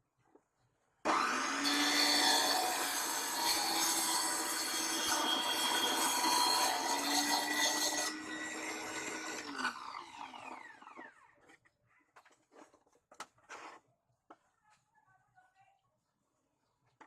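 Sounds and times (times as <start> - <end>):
saw motor winding down: 1.1 - 11.2
table saw cutting wood: 1.1 - 11.2.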